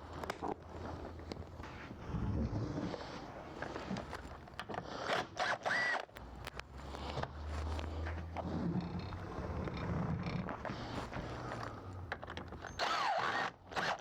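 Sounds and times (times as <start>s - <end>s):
cutters clicking and rasping: 3.6s - 14.0s.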